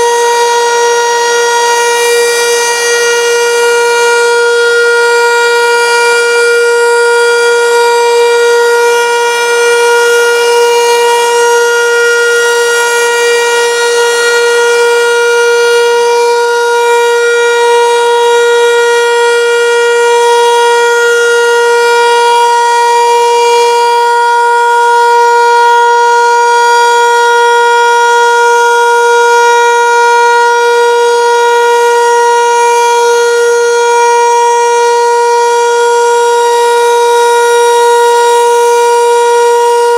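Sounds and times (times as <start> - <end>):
motor siren steady tone: 0.0 - 39.9.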